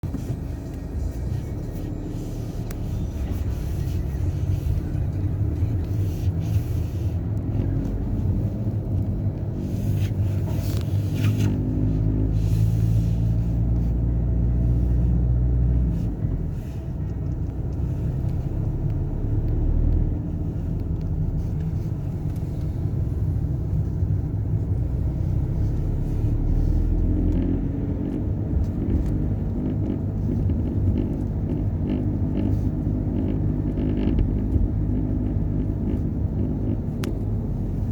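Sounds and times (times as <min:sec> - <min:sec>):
road and engine rumble: 0:00.0 - 0:37.9
dashboard rattle: 0:28.5 - 0:37.6.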